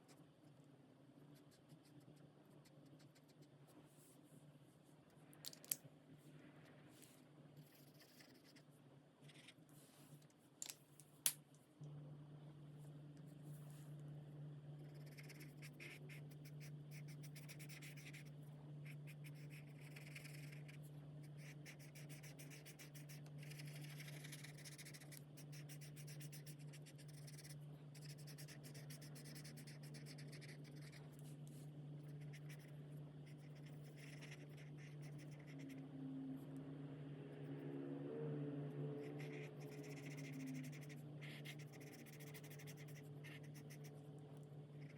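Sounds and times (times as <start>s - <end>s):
steady low hum: 0.0s - 44.9s
markers scratching on paper: 14.9s - 31.0s, 39.2s - 43.9s.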